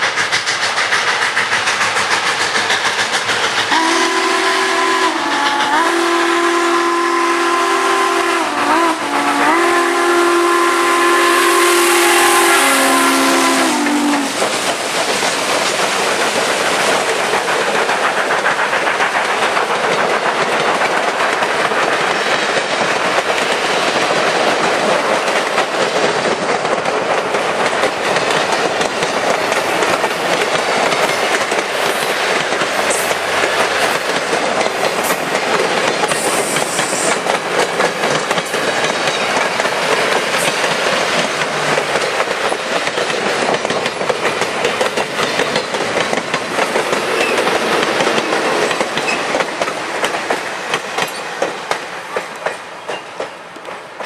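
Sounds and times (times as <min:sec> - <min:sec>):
train wheels clattering on rails: 0:00.0 - 0:54.0
steam whistle chord: 0:03.7 - 0:14.4.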